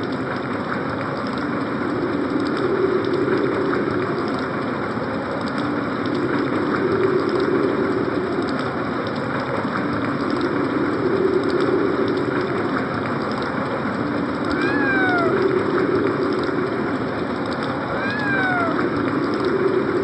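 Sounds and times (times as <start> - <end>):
synthesized wind and rain noise: 0.0 - 20.0
low synthesized howl: 14.4 - 16.4, 17.8 - 19.6.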